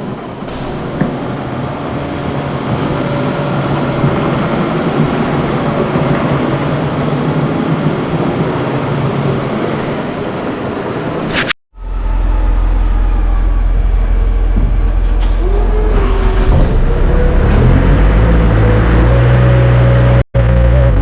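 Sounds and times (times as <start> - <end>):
low hum: 0.3 - 8.3, 11.3 - 20.7
rising pitched whine: 0.4 - 7.7, 11.3 - 15.5.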